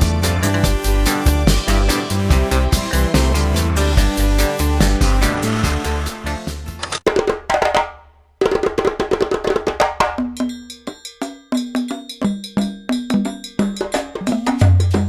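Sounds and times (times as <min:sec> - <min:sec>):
music with percussive beat: 0:00.0 - 0:15.0.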